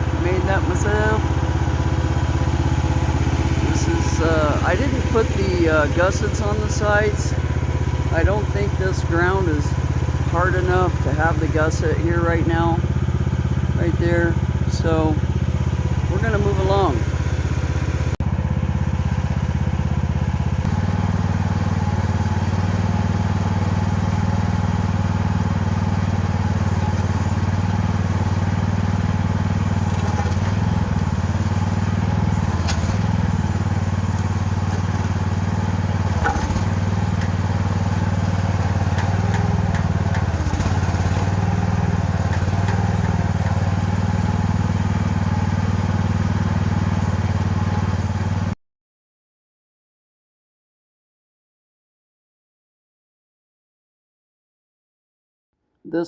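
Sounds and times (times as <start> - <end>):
excavator engine running: 0.0 - 48.6
machine knocks and clatters: 34.8 - 44.1.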